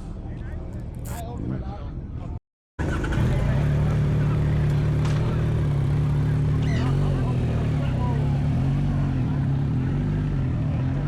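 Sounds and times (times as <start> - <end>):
motorcycle engine idling: 2.8 - 10.6.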